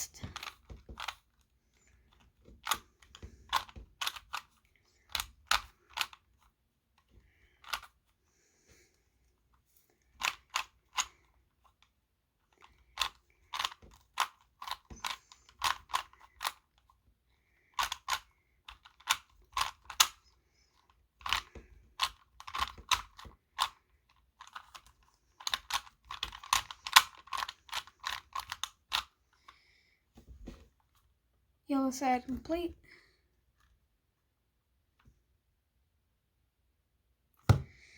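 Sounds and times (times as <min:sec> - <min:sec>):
puzzle cube clicking and clacking: 0:00.0 - 0:08.0, 0:10.0 - 0:17.0, 0:17.6 - 0:29.2.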